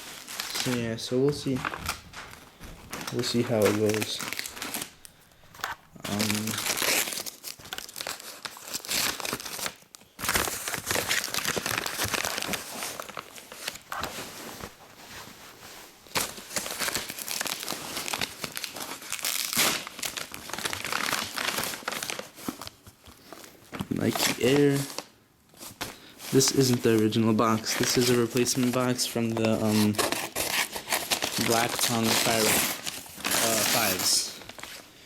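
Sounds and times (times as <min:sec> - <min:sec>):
packaging crumpling and crinkling: 0:00.0 - 0:35.0
package tearing: 0:01.6 - 0:05.0, 0:05.6 - 0:13.8, 0:16.1 - 0:22.8, 0:26.4 - 0:34.8.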